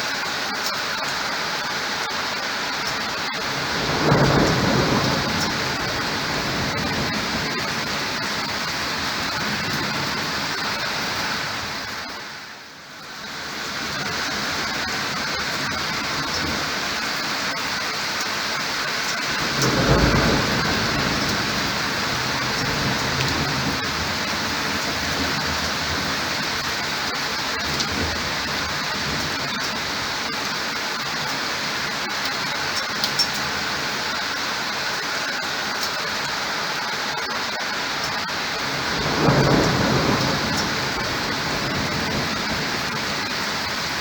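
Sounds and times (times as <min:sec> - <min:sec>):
heavy rain falling: 0:00.0 - 0:44.0
thunderclap and rumble: 0:02.0 - 0:12.1, 0:13.4 - 0:33.9, 0:37.4 - 0:44.0.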